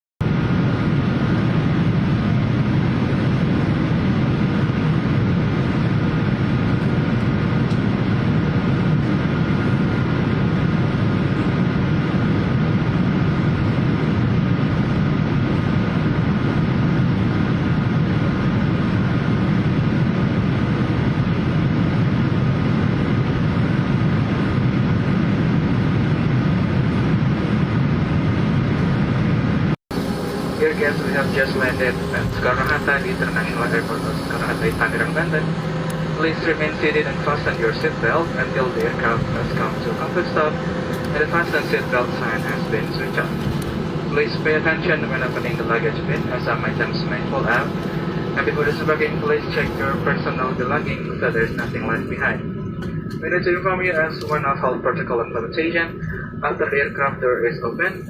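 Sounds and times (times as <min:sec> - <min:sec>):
airliner cabin rumble: 0:00.2 - 0:58.0
faint steady tones: 0:29.9 - 0:57.7.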